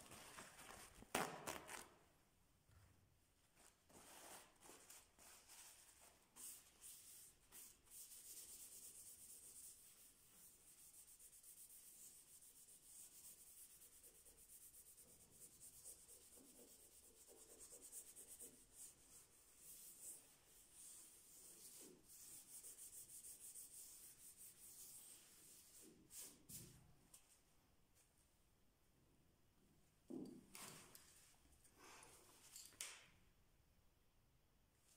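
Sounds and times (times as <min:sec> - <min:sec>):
sandpaper rubbing on wood floor: 0:04.0 - 0:26.7.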